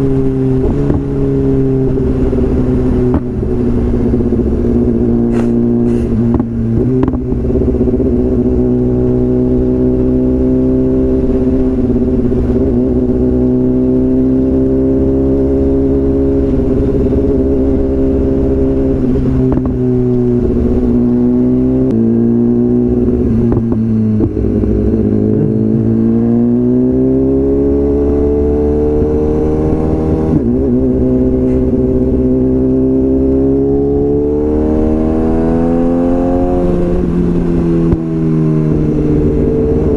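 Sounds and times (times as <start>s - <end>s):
motorcycle engine revving: 0.0s - 39.9s
exhaust pops: 5.3s - 7.4s, 19.4s - 20.2s.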